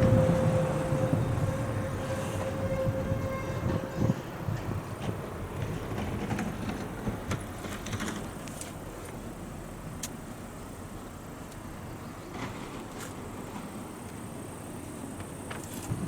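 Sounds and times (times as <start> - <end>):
steady tone: 0.0 - 3.8
passing vehicle rumble: 0.0 - 7.3.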